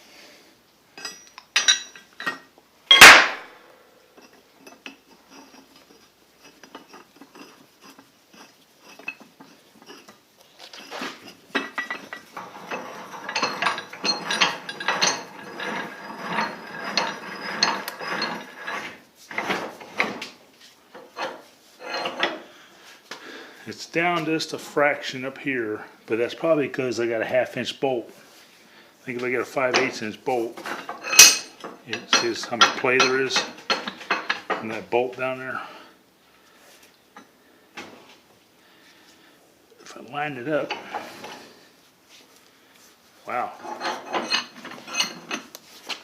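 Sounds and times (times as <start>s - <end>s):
metal parts clinking: 1.0s - 3.4s, 4.2s - 18.8s, 30.7s - 34.7s, 43.4s - 45.6s
loud metal clank: 2.9s - 3.6s
metal-on-metal rubbing: 4.2s - 20.2s, 21.0s - 22.5s, 29.5s - 35.1s, 43.4s - 45.6s.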